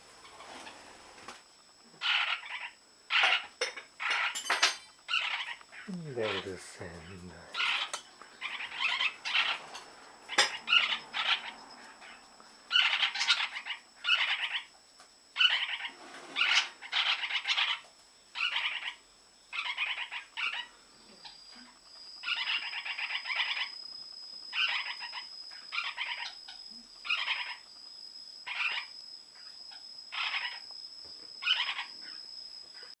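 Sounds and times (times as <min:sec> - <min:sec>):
parakeet chattering calls: 0:02.0 - 0:14.7, 0:15.4 - 0:17.8, 0:18.4 - 0:23.8, 0:24.5 - 0:27.6, 0:28.4 - 0:29.0, 0:30.1 - 0:30.6, 0:31.4 - 0:32.2.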